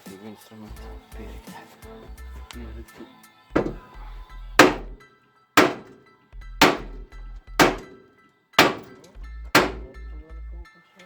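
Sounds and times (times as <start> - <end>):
ringing percussive hits: 4.6 - 5.0, 6.6 - 8.0, 8.6 - 9.0.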